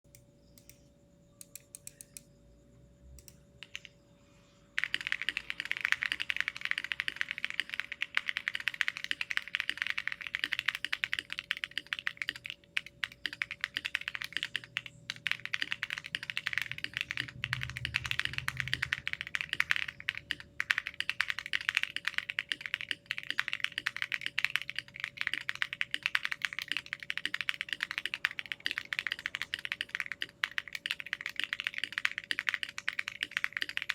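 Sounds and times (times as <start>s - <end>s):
faint steady hum: 0.0s - 33.9s
mechanical keyboard typing: 3.2s - 3.9s, 4.8s - 33.9s.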